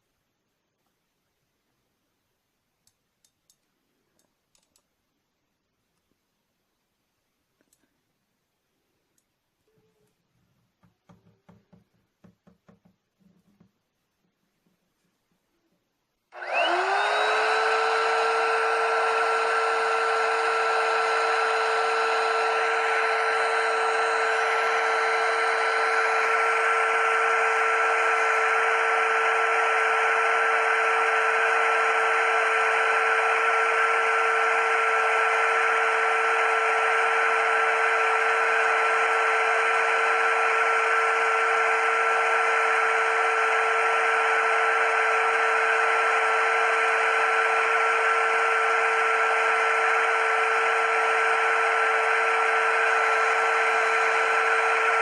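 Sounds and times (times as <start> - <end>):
small electric motor whining: 16.4 - 55.0.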